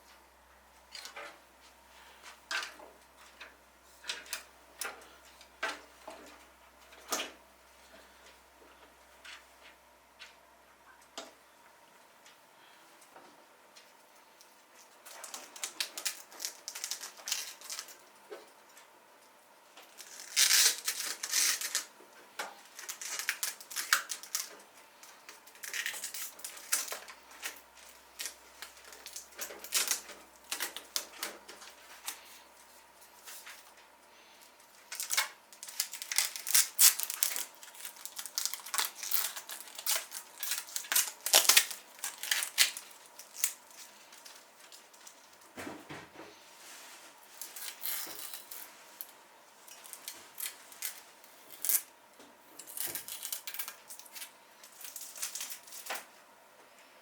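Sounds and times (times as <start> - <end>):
plastic packaging crinkling: 15.1 - 18.0, 19.9 - 21.9, 22.6 - 32.3, 34.8 - 45.6, 52.6 - 56.0.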